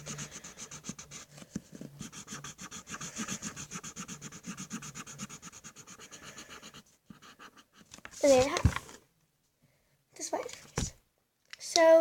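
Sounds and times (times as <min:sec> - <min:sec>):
pencil scratching on paper: 0:00.0 - 0:08.3.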